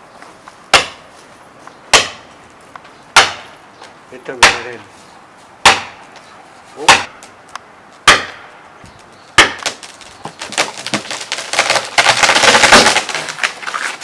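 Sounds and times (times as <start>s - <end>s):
axe chopping wood: 0.7s - 1.0s, 1.9s - 2.3s, 3.1s - 3.5s, 4.4s - 4.8s, 5.6s - 6.0s, 6.8s - 7.2s, 8.0s - 8.4s, 9.4s - 13.6s
crackling clatter: 9.6s - 14.0s.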